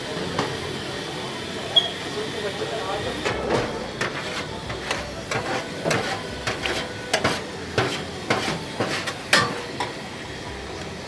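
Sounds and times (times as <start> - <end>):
metal kitchen utensils clacking: 3.1 - 10.0.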